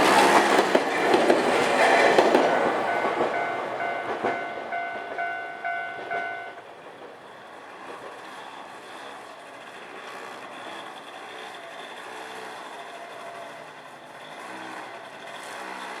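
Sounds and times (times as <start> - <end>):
level crossing warning bell: 1.0 - 6.6.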